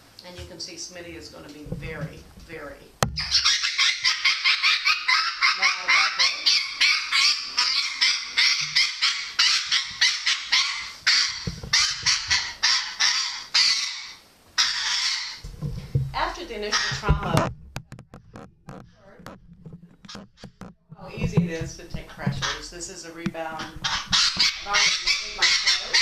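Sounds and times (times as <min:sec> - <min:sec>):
parrot squawking: 0:03.2 - 0:15.5, 0:16.5 - 0:17.5, 0:22.1 - 0:22.8, 0:23.5 - 0:26.0.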